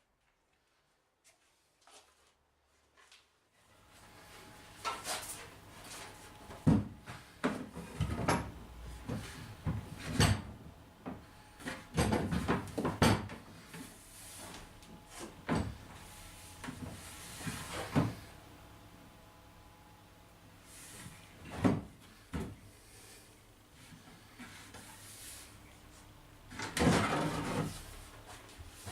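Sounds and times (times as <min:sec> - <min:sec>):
objects knocking and clunking: 0:06.5 - 0:13.8.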